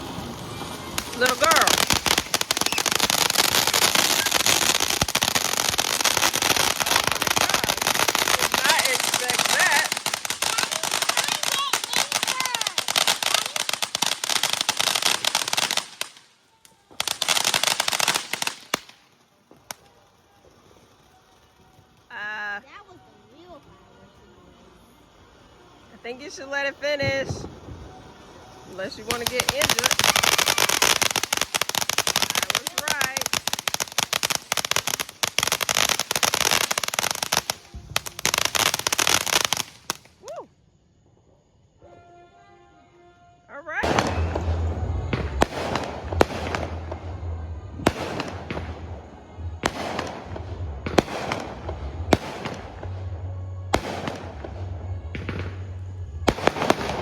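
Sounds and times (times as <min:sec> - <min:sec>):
sharp firework bangs: 0:00.0 - 0:16.3, 0:16.9 - 0:19.8, 0:27.0 - 0:40.1, 0:43.8 - 0:57.0
fireworks crackling: 0:00.0 - 0:42.2, 0:43.5 - 0:57.0.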